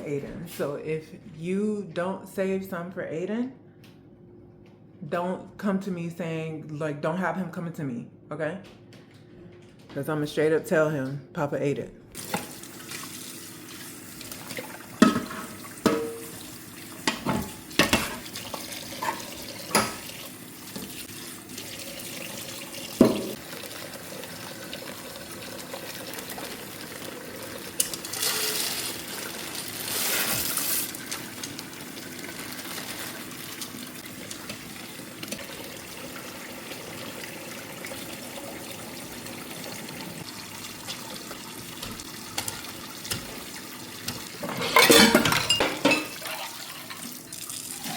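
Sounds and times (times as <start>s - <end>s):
dishes and utensils clinking: 15.0s - 16.4s, 44.0s - 47.0s
tap running: 17.0s - 26.7s.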